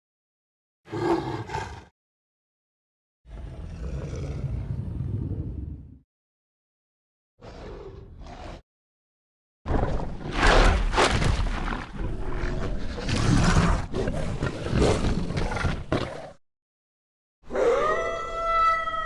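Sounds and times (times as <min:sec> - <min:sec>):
pitched howl: 0:17.5 - 0:19.0.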